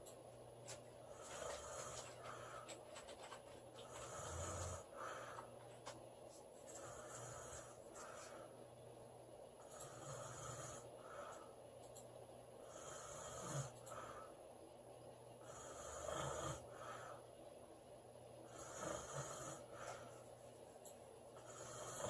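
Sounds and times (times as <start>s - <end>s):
woman snoring: 4.0s - 4.9s, 9.6s - 10.9s, 12.6s - 13.8s, 15.4s - 17.0s, 18.5s - 19.7s, 21.4s - 22.0s.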